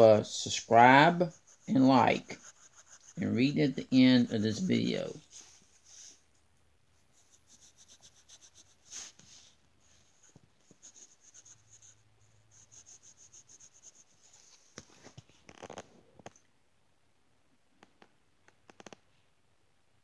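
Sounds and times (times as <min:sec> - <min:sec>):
pencil scratching on paper: 0:00.0 - 0:06.1, 0:07.0 - 0:14.7.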